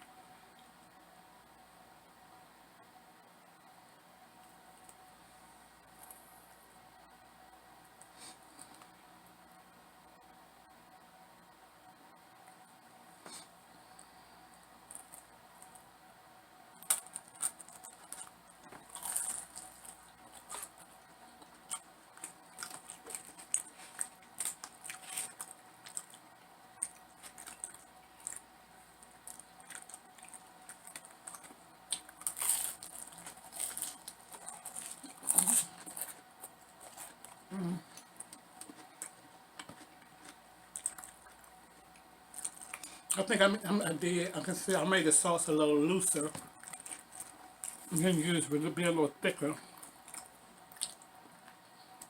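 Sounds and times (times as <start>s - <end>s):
chewing: 16.8s - 43.2s, 46.2s - 48.0s, 49.6s - 52.0s.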